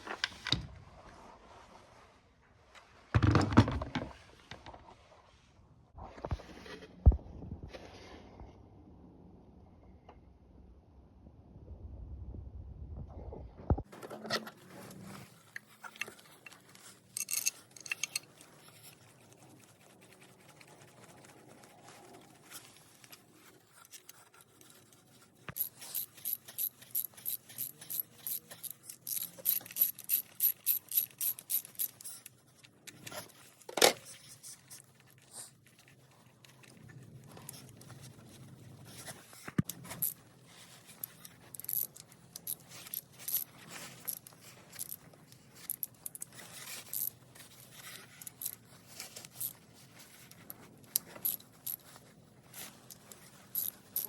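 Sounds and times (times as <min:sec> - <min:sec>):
tool clicks and scrapes on metal: 0:14.0 - 0:21.3, 0:22.5 - 0:36.8, 0:40.8 - 0:51.8
hand ratchet clicking: 0:25.6 - 0:32.0, 0:53.6 - 0:53.8.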